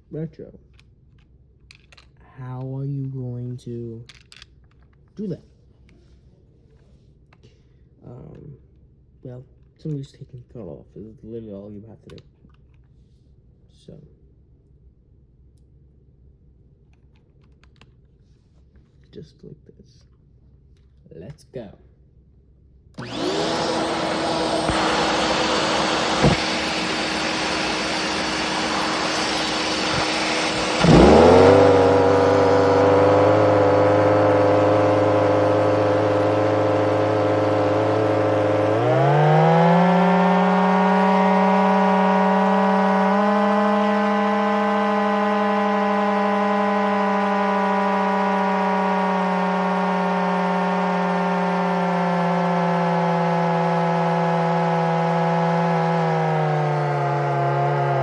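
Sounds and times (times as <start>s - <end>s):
turbine engine humming whine: 23.0s - 58.0s.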